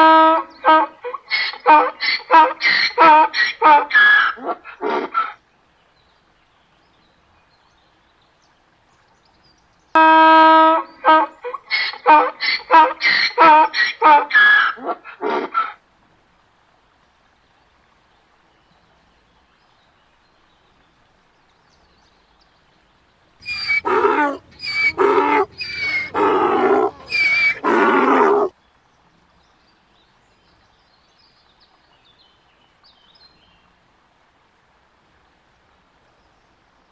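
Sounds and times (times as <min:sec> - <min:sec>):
donkey braying: 0:23.4 - 0:28.5.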